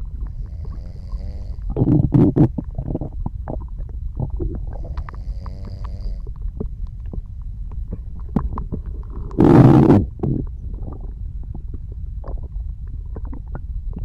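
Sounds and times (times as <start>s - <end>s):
stomach rumbling and gurgling: 0.0s - 14.0s
squeaky gurgle: 0.2s - 6.3s, 8.3s - 11.2s.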